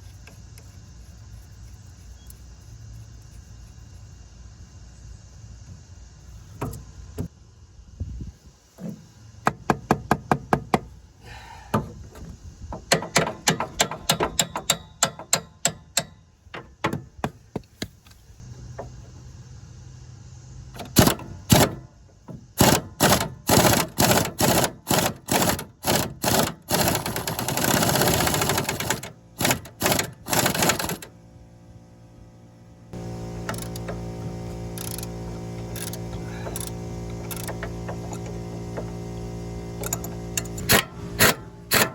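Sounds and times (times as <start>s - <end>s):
metallic taps and clicks of tools: 12.9s - 16.2s.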